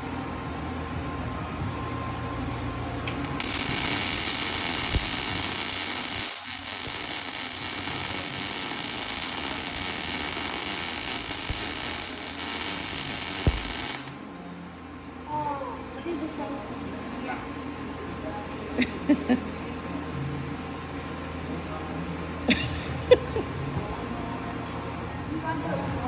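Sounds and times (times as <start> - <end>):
welding arc crackling buzz: 3.1 - 14.2.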